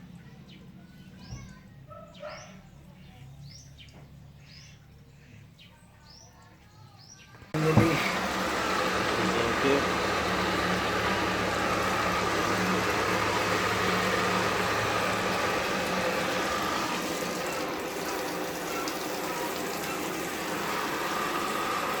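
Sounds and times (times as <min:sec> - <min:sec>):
electric water pump motor hum: 0:07.6 - 0:22.0
water rushing through pump: 0:07.6 - 0:22.0.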